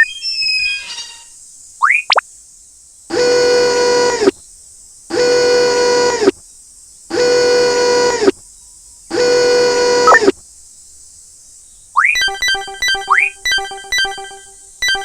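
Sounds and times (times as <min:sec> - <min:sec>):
horn blasts: 0:03.1 - 0:04.3, 0:05.1 - 0:06.3, 0:07.1 - 0:08.3, 0:09.1 - 0:10.3, 0:12.2 - 0:15.0.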